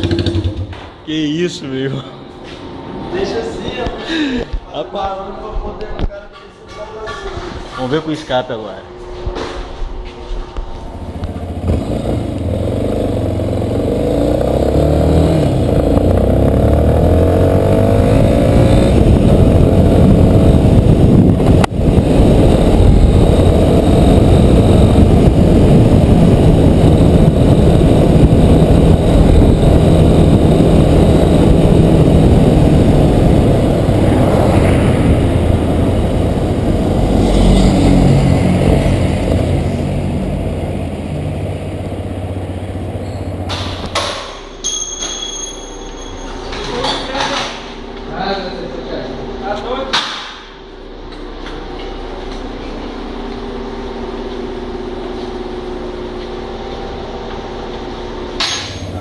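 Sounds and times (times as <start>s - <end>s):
motorcycle engine revving: 0.0s - 1.0s, 10.9s - 44.0s.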